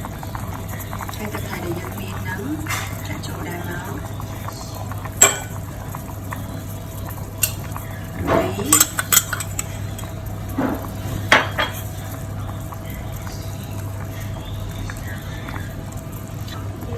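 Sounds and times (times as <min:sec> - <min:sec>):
steady low hum: 0:00.0 - 0:16.9
spoon stirring soup in metal pot: 0:04.0 - 0:10.2
spoon clinking against pot: 0:05.2 - 0:05.6, 0:07.4 - 0:07.8, 0:08.4 - 0:10.1.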